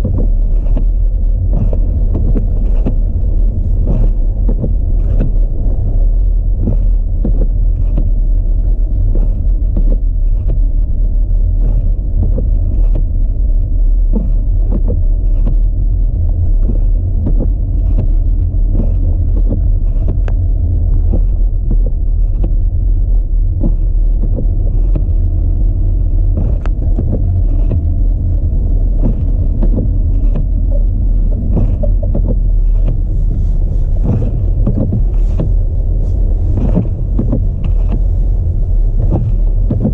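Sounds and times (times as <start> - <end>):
road and wind rumble: 0.0 - 39.9
small clicks and knocks: 29.0 - 33.0, 34.0 - 35.6.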